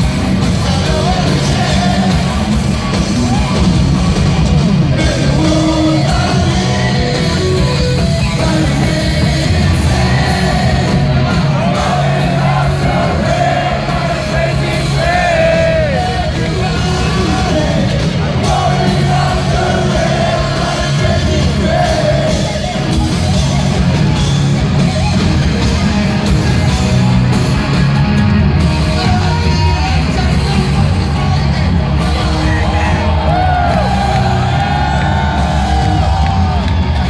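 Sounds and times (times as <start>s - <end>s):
live heavy metal band: 0.0s - 37.0s
person singing and yelling: 4.9s - 23.0s.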